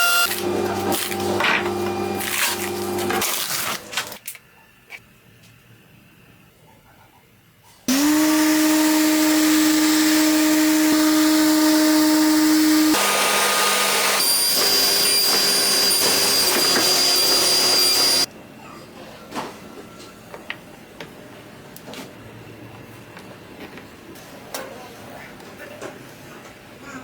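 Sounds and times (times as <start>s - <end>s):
power tool motor whining: 0.0s - 3.2s, 7.9s - 18.3s.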